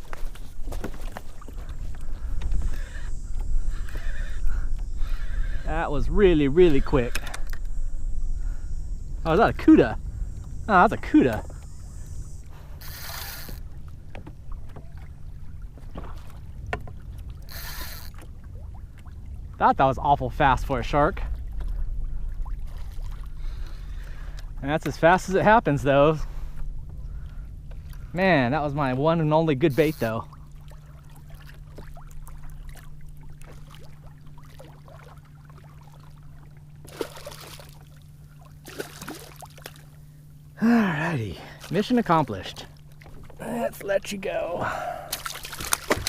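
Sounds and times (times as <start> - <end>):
wind rumbling on microphone: 0.0 - 34.7
steady low hum: 0.0 - 46.0
water around a kayak: 0.0 - 46.0
short hissing rush: 11.4 - 13.6.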